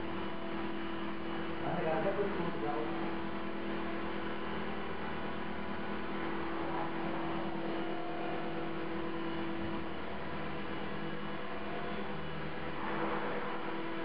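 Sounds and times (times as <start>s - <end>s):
rc helicopter buzzing hum: 0.0s - 14.0s.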